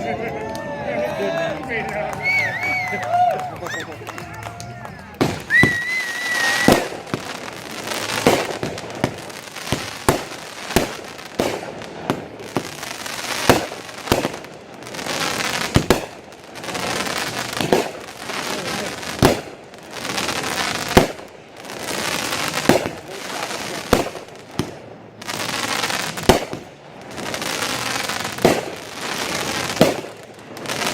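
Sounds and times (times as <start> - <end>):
fireworks crackling: 0.0 - 30.9.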